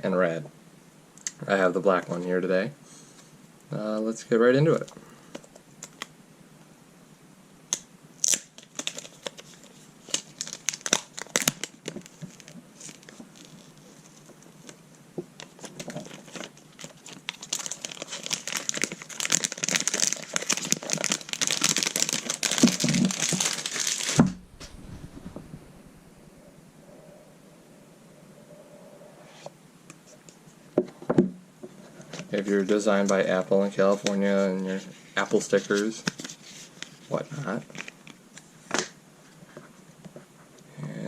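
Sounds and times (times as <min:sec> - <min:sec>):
plastic wrap crinkling and ripping: 0:07.7 - 0:14.8, 0:15.4 - 0:25.5, 0:35.2 - 0:38.9.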